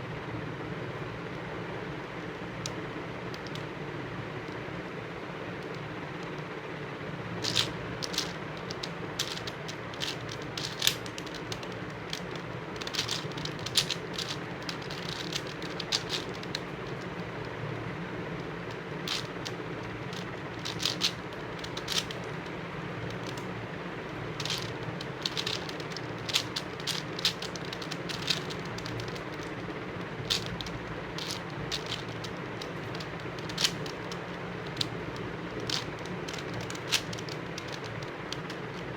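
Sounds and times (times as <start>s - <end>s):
steady background hum: 0.0s - 38.9s
plastic puzzle cube clicks: 7.4s - 17.0s, 18.7s - 22.3s, 23.1s - 23.5s, 24.4s - 29.5s, 30.2s - 38.9s.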